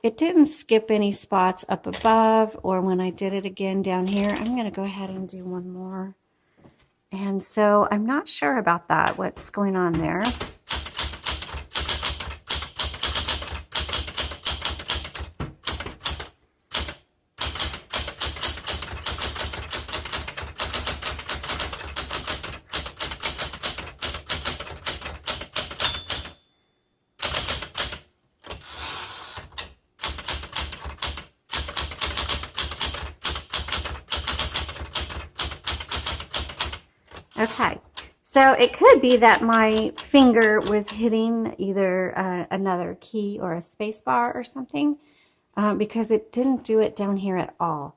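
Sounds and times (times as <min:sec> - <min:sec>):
typewriter keystrokes: 0:09.0 - 0:26.4, 0:27.2 - 0:28.6, 0:29.4 - 0:38.1, 0:39.1 - 0:41.0.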